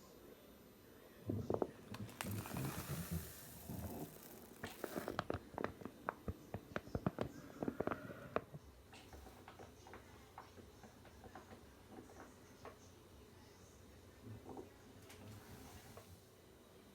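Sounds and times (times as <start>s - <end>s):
ventilator hissing: 1.0s - 16.9s.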